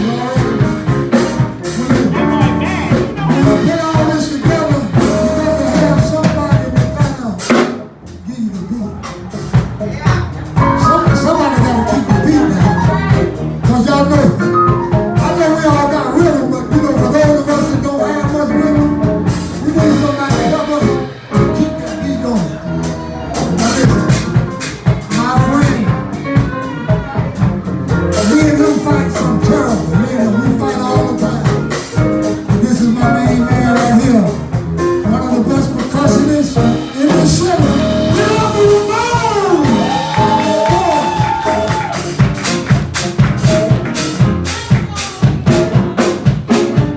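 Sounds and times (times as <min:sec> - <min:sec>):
pitched melody line: 0:00.0 - 0:07.4, 0:10.6 - 0:26.3, 0:35.0 - 0:46.2
drum kit beating: 0:00.0 - 0:46.9
live soul band playing: 0:00.0 - 0:46.9.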